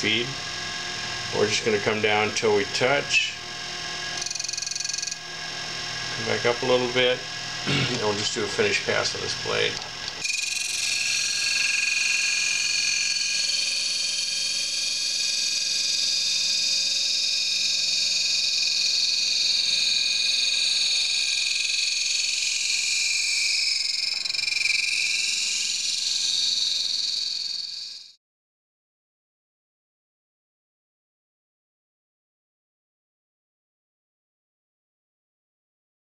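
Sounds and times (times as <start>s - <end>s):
high-pitched grinding hiss: 0.0s - 28.1s.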